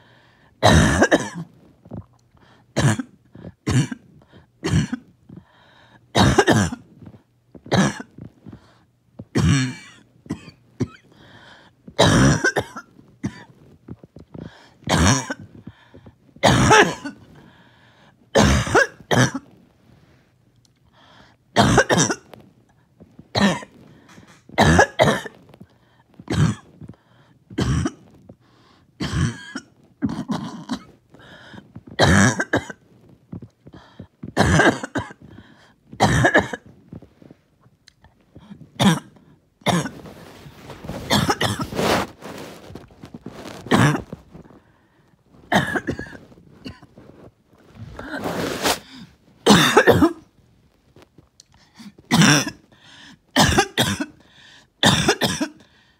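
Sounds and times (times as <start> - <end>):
person coughing: 0.6 - 1.5, 2.8 - 5.1, 6.2 - 7.1, 7.7 - 8.3, 9.4 - 11.2, 12.0 - 13.5, 14.4 - 15.6, 16.4 - 17.3, 18.4 - 19.5, 21.6 - 22.2, 23.4 - 25.4, 26.3 - 26.8, 27.5 - 28.1, 29.0 - 32.8, 34.2 - 35.4, 36.0 - 36.7, 38.4 - 40.2, 40.8 - 42.0, 43.6 - 44.6, 45.5 - 47.0, 47.8 - 50.3, 51.8 - 52.7, 53.4 - 54.2, 54.8 - 55.7.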